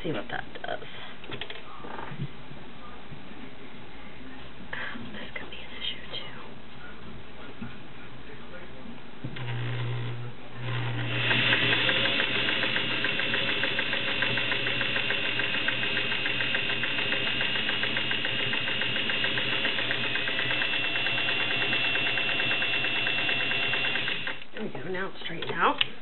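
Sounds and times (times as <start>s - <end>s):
sewing machine stitching: 10.6s - 24.5s.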